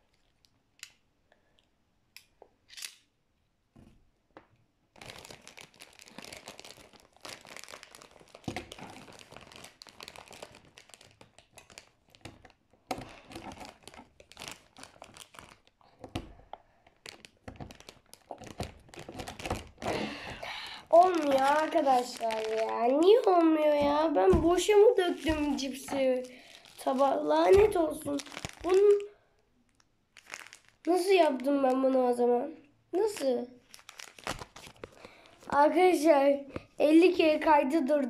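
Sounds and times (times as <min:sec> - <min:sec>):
foil chip bag crinkling: 0:04.9 - 0:16.0, 0:16.7 - 0:29.1, 0:29.7 - 0:31.9, 0:33.0 - 0:35.5.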